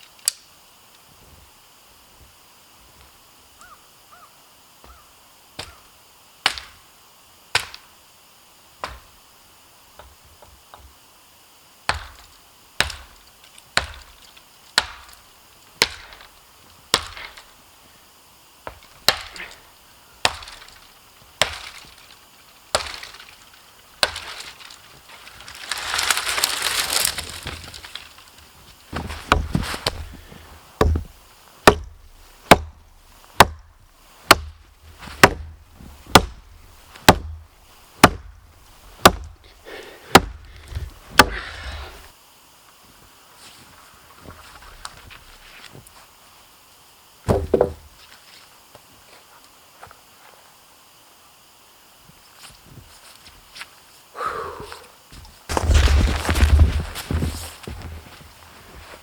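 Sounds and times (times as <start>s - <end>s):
chopping blows on wooden pole: 30.8s - 37.4s, 38.0s - 38.4s, 39.0s - 39.4s, 40.1s - 40.5s, 41.1s - 41.5s.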